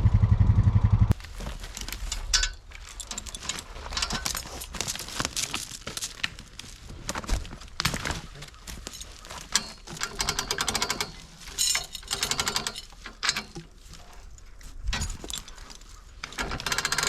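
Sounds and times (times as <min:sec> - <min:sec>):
rapid mechanical clicking: 0:09.8 - 0:13.4, 0:16.2 - 0:17.0.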